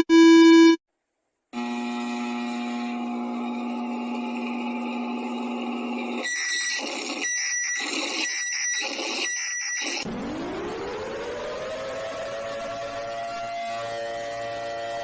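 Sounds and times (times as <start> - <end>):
short electronic beeps: 0.0 - 0.8
steady buzzing tone: 1.6 - 6.2
siren rising: 8.2 - 15.0.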